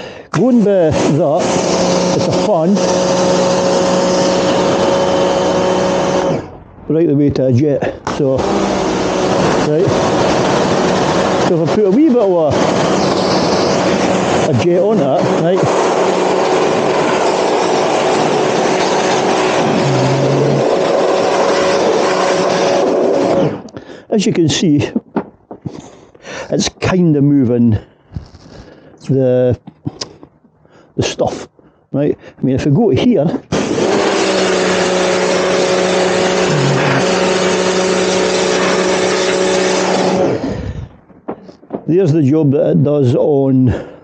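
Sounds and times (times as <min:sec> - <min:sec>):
pressure washer motor humming: 0:00.0 - 0:06.9, 0:07.9 - 0:23.8, 0:33.3 - 0:40.9
water jet hissing: 0:08.3 - 0:23.4, 0:33.7 - 0:40.5.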